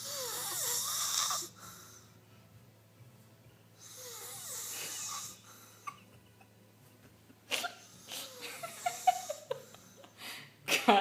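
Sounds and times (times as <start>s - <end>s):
snoring: 0.0s - 2.1s, 3.8s - 5.7s.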